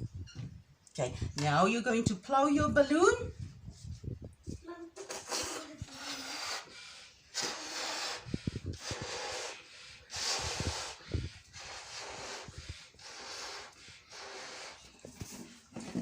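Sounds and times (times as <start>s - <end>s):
person blowing up a balloon: 5.0s - 15.4s.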